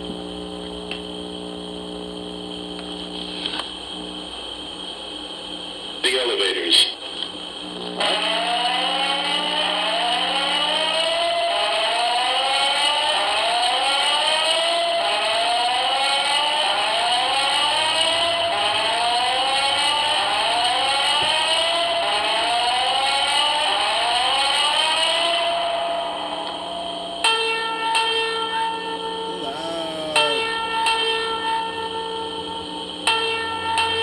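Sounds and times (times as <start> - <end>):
building alarm whooping: 8.0 - 30.8.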